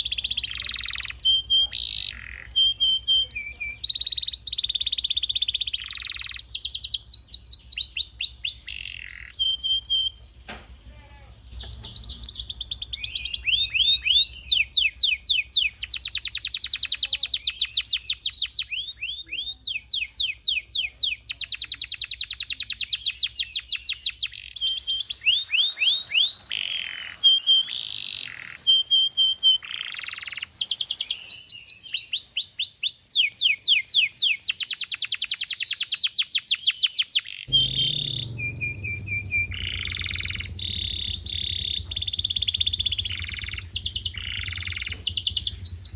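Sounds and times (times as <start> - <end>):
canary singing trills: 0.0 - 45.9
low hum: 37.5 - 45.9.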